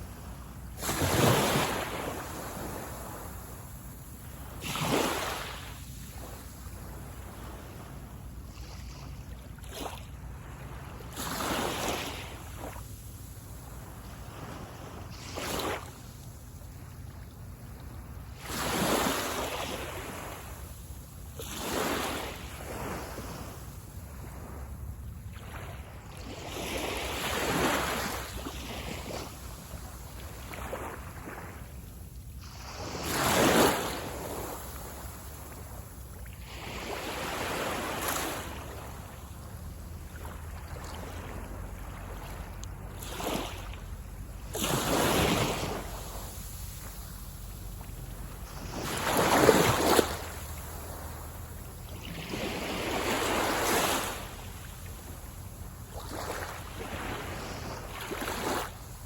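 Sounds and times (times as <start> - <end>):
sea waves breaking on shore: 0.0 - 59.0
steady low rumble: 34.0 - 53.5.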